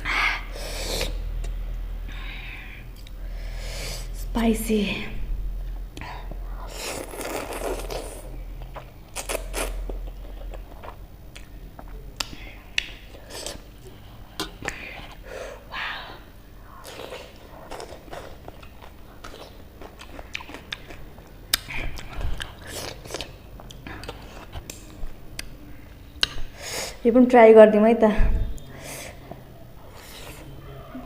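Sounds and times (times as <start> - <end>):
person chewing noodles: 6.0 - 15.3, 16.7 - 25.5.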